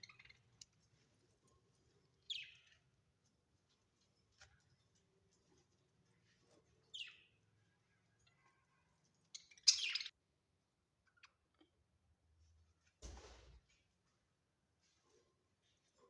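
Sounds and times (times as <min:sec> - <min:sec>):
budgerigars chirping: 0:09.6 - 0:10.1.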